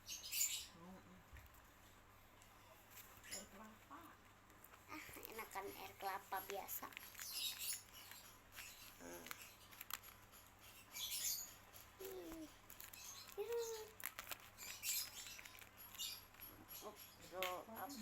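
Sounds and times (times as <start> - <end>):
paper crinkling and rustling: 12.0 - 16.0.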